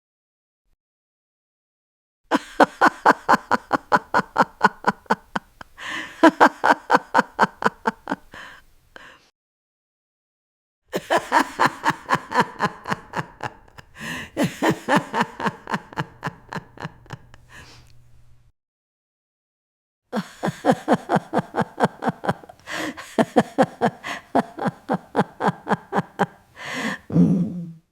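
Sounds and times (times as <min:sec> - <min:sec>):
old woman laughing: 0:02.3 - 0:09.1, 0:10.9 - 0:17.7, 0:20.2 - 0:27.2.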